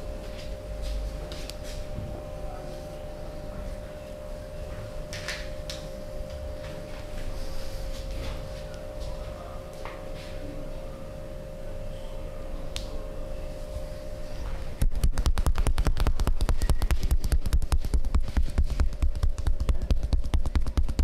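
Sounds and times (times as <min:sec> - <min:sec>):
faint hum: 0:00.0 - 0:21.0.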